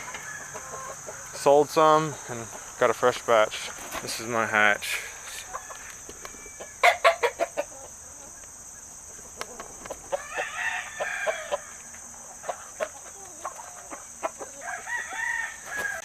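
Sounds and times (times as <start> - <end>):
rooster crowing: 0.0 - 1.3, 5.4 - 7.8, 10.1 - 11.9, 14.5 - 16.0
chickens clucking: 0.0 - 16.0.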